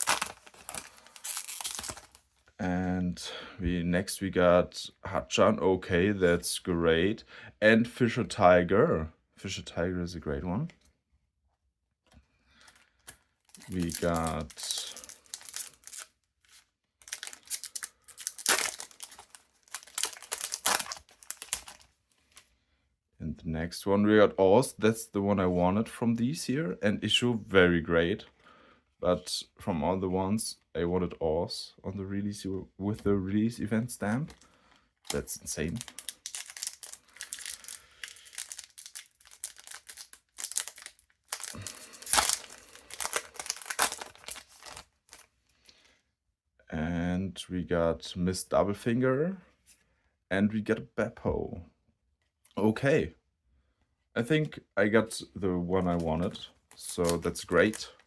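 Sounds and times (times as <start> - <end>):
cards being handled: 0.0 - 2.2, 13.0 - 22.5
foil pack crinkling and tearing: 0.0 - 2.2, 13.0 - 22.4, 35.1 - 45.3, 56.2 - 58.0.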